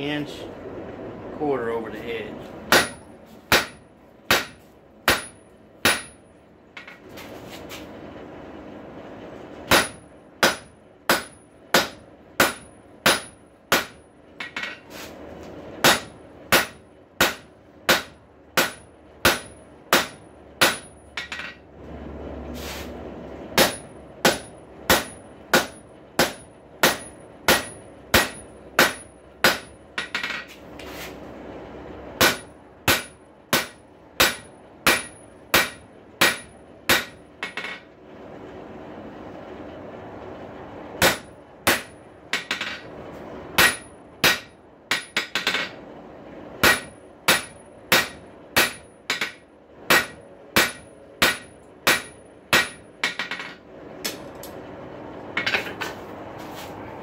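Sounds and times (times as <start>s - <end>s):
hammer striking hot steel on anvil: 2.7s - 7.0s, 9.7s - 14.9s, 15.8s - 21.6s, 23.6s - 30.5s, 32.2s - 37.8s, 41.0s - 42.9s, 43.6s - 45.8s, 46.6s - 54.5s.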